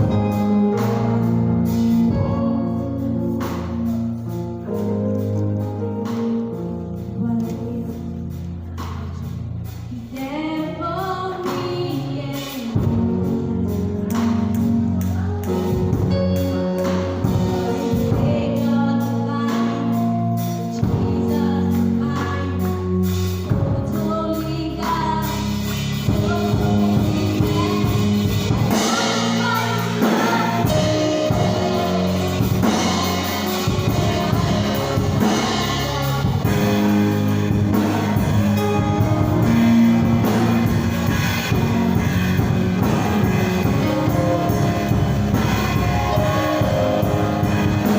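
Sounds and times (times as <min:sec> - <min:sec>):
drums striking: 0:24.8 - 0:47.9
voices singing gospel: 0:24.8 - 0:47.9.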